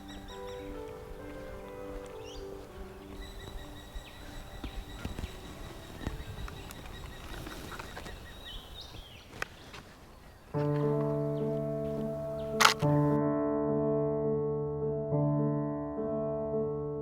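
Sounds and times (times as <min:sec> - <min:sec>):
small birds chirping: 0:00.0 - 0:13.2
sharp clicks: 0:11.9 - 0:13.2.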